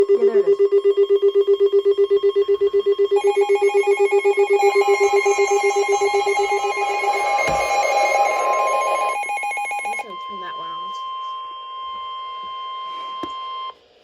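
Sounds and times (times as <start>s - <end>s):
pulsing low beep: 0.0s - 11.6s
steady higher tone: 3.1s - 10.2s
higher pulsing tone: 3.2s - 10.0s.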